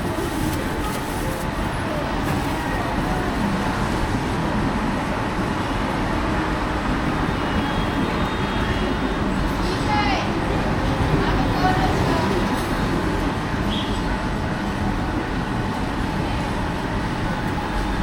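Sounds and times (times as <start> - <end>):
street traffic: 0.0 - 18.0.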